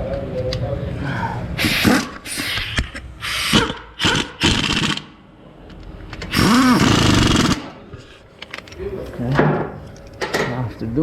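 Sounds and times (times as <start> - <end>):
impact gun bursts: 3.4 - 5.2, 6.3 - 7.8.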